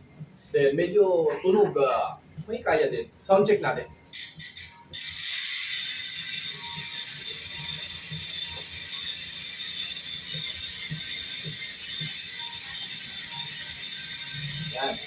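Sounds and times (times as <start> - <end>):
bicycle hub ratcheting clicks: 4.1 - 15.0.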